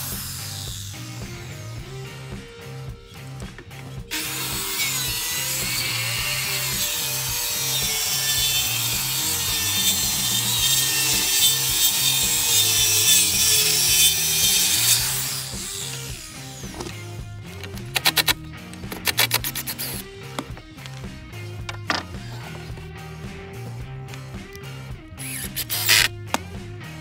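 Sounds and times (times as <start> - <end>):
power saw cutting wood: 0.0 - 20.1, 25.2 - 26.1.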